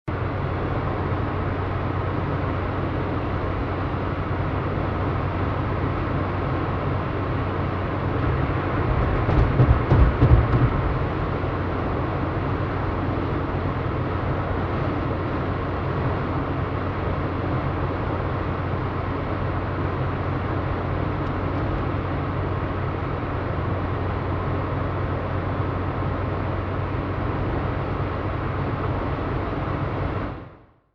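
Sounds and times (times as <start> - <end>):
road and engine rumble in car: 0.0 - 30.8.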